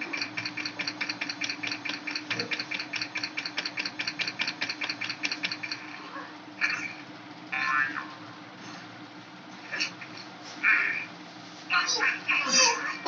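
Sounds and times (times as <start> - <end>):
small mechanism clicking rapidly: 0.0 - 5.8
steady hum: 0.0 - 13.0.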